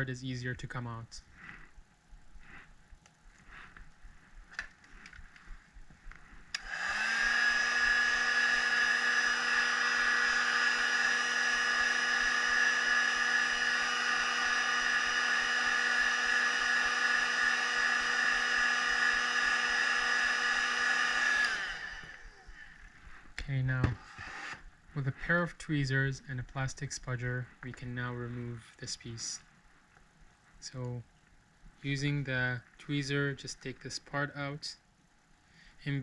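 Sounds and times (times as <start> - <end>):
heat gun blowing: 6.4 - 22.9, 23.8 - 24.7
heat gun switch click: 6.5 - 6.8.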